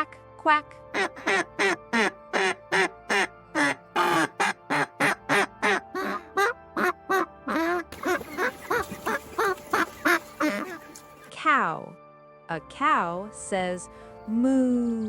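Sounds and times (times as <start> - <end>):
background music: 0.0 - 15.0
duck quacking: 1.0 - 11.0.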